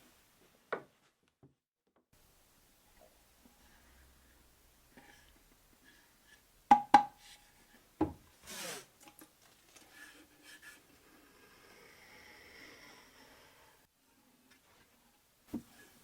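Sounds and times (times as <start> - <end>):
wood knocking: 6.7 - 7.1
scrape across wood: 9.8 - 11.2.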